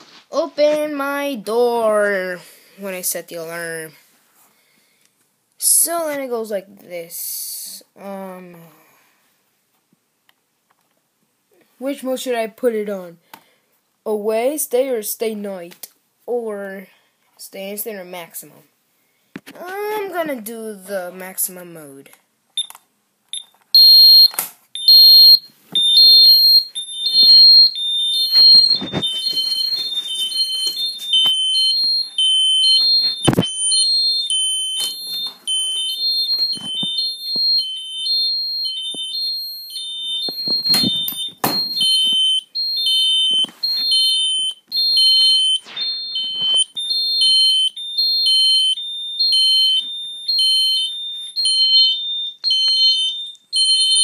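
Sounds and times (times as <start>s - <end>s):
two-tone alarm siren warble: 24.9s - 54.0s.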